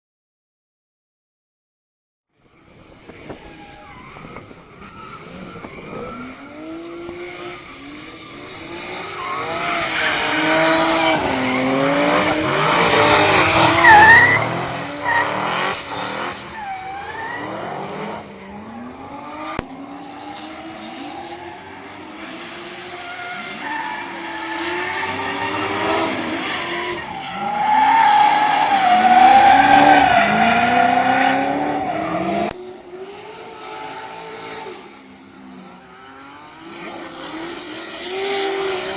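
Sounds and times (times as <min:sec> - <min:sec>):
car engines revving: 0:02.6 - 0:38.9
tyre squeal: 0:03.3 - 0:17.8.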